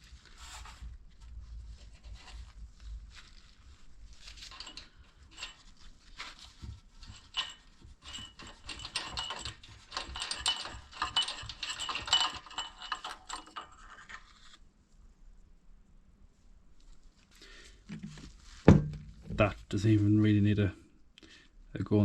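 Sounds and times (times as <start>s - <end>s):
metal engine parts clicking and rattling: 4.2s - 5.9s, 6.5s - 14.3s.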